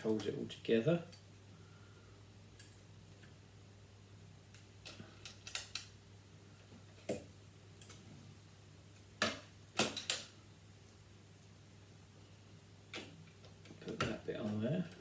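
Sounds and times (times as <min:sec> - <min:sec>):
plastic pieces clicking together: 0:04.8 - 0:05.9.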